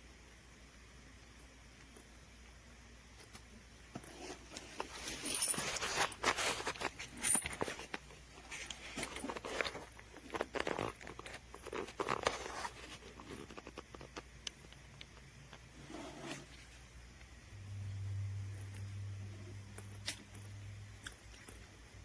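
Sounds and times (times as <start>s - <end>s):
soft rustling: 3.2s - 14.3s.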